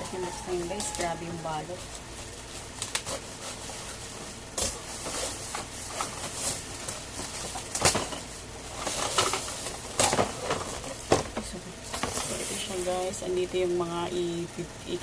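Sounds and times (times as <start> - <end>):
plastic wrap rustling: 0.0 - 13.2
sharp plastic crackles: 1.8 - 13.2.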